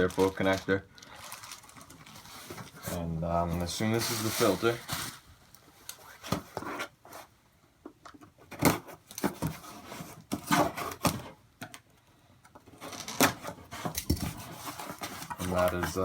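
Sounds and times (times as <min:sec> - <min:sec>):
packaging crinkling and rustling: 0:00.0 - 0:07.3, 0:12.8 - 0:16.0.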